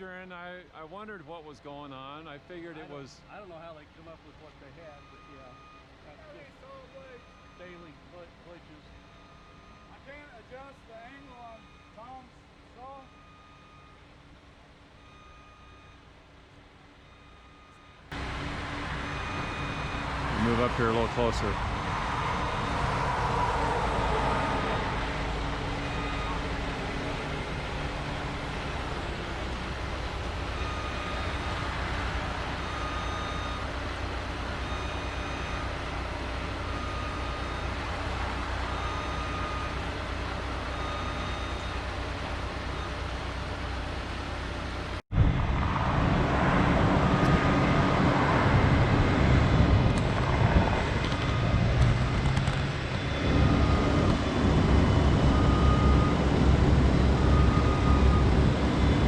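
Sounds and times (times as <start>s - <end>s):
heavy construction machinery running: 0.0s - 59.0s
faint short beeps: 4.8s - 8.0s, 8.8s - 10.4s, 11.0s - 14.1s, 17.0s - 18.1s, 40.6s - 41.9s.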